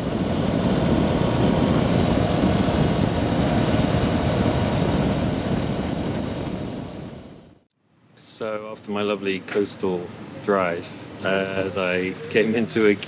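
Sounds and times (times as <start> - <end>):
motorcycle engine hum: 0.0 - 7.7
wind and road noise: 0.0 - 7.7.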